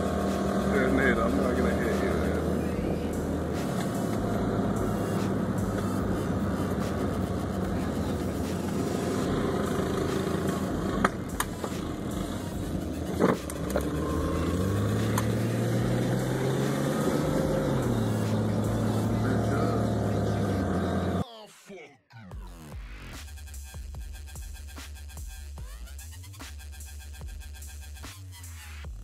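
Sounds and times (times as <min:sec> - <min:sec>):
lawnmower engine: 0:00.0 - 0:21.2
two-stroke dirt bike engine: 0:00.0 - 0:21.2.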